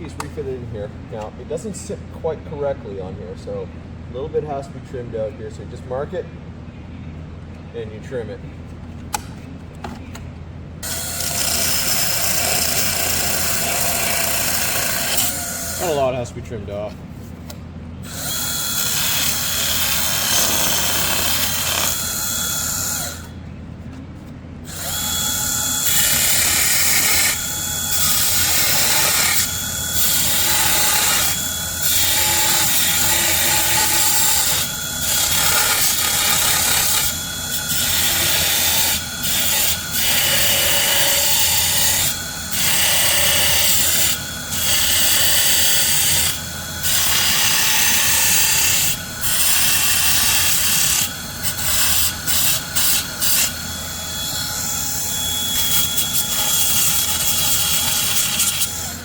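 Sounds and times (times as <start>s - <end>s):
power tool cutting plastic: 10.8s - 16.1s, 18.0s - 23.3s, 24.7s - 59.0s.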